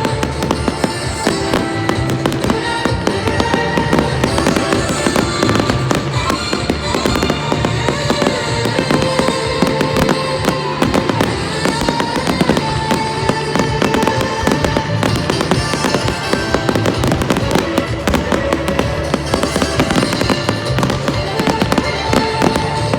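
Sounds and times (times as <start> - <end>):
fireworks bangs and crackles: 0.0 - 22.9
loud music: 0.0 - 22.9.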